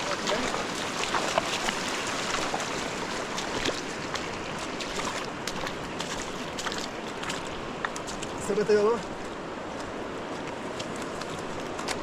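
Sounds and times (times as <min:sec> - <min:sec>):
small splashes and clicks: 0:00.0 - 0:08.4, 0:09.2 - 0:12.0
river water rushing: 0:00.0 - 0:12.0.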